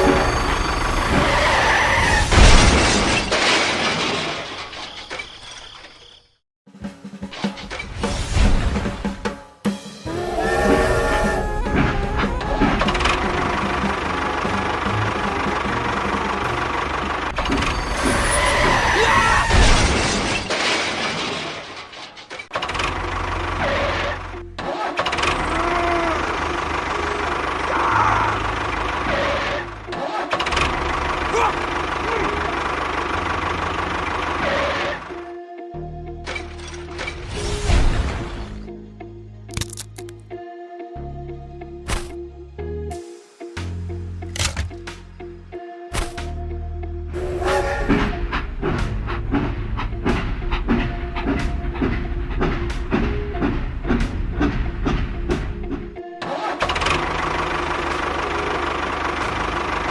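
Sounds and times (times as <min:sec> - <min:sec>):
engine droning: 0:00.0 - 0:02.0, 0:10.1 - 0:19.1, 0:25.2 - 0:35.4, 0:47.1 - 0:59.9
loud crash: 0:00.0 - 0:05.0, 0:17.4 - 0:22.6.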